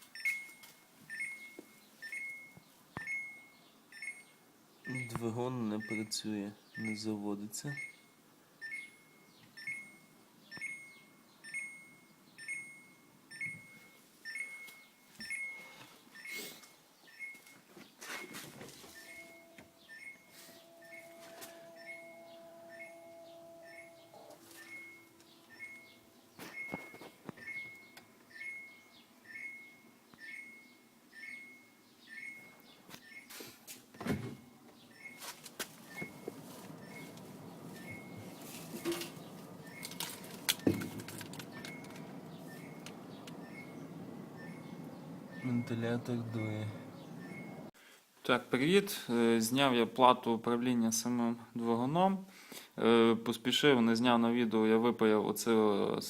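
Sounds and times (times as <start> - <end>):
refrigerator alarm beeping: 0.0 - 47.7
handling knocks and thump: 37.8 - 42.1.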